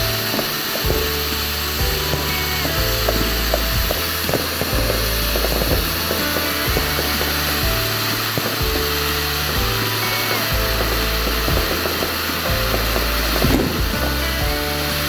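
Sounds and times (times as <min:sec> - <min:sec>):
firework fountain hissing: 0:00.0 - 0:15.0.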